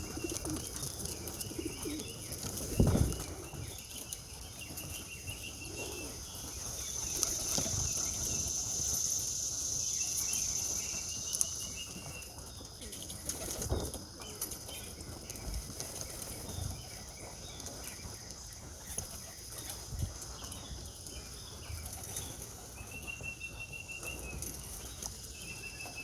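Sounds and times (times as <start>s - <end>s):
pigeon wings flapping: 0.0s - 5.0s, 12.8s - 17.0s.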